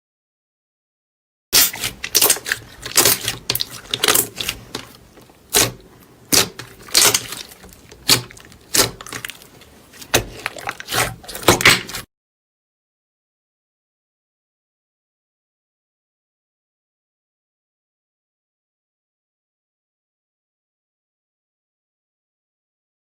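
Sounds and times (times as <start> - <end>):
slime crackling pops: 5.5 - 9.4.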